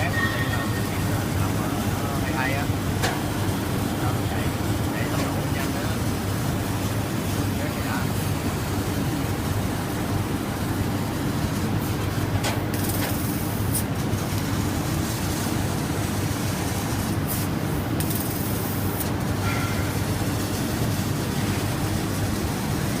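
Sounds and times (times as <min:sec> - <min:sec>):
laser cutting machine drone: 0:00.0 - 0:23.0.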